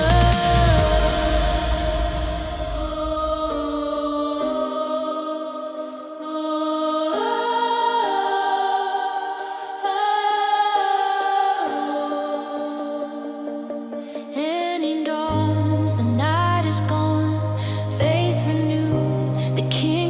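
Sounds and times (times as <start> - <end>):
deep bass: 0.0 - 4.0
choir-like electronic chords: 0.0 - 20.0.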